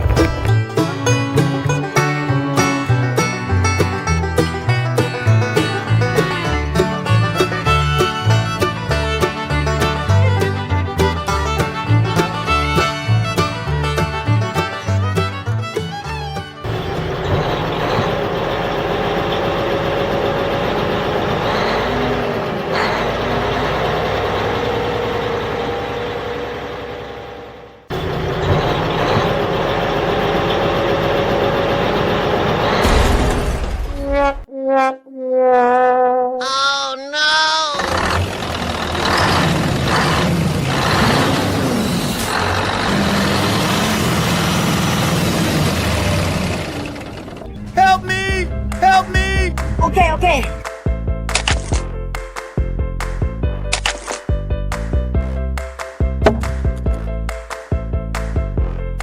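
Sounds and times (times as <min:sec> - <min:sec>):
truck engine idling: 0:00.0 - 0:33.8, 0:37.7 - 0:51.2, 0:54.6 - 0:58.8.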